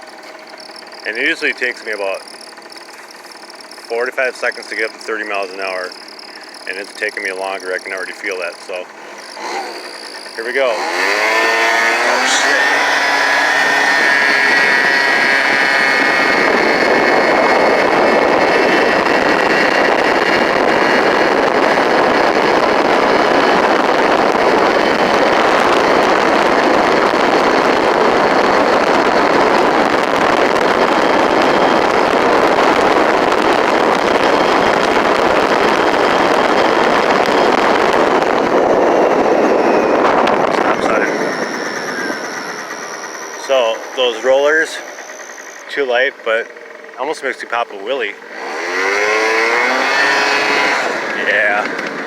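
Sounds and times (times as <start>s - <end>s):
faint whine: 0.0s - 10.8s, 11.4s - 48.4s
scooter engine running high: 0.0s - 52.0s
wind rushing on microphone: 10.7s - 45.7s.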